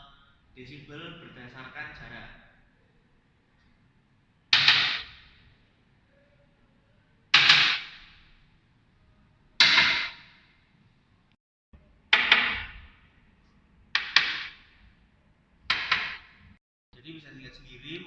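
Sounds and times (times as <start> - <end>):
sharp knock or clap: 4.6 - 5.4, 7.4 - 8.0, 9.6 - 10.4, 12.1 - 13.0, 14.0 - 14.7, 15.7 - 16.4.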